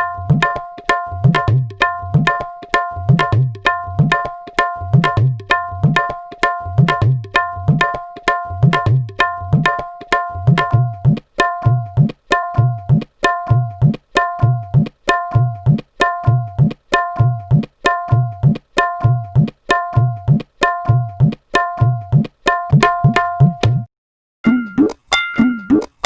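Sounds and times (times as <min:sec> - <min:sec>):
tabla playing: 0:00.0 - 0:26.0.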